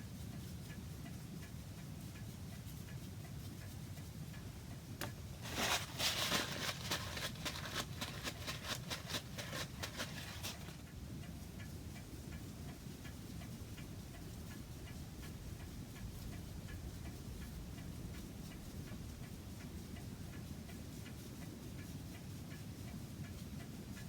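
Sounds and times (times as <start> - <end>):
scratchy clicks and rustle: 5.0 - 10.9.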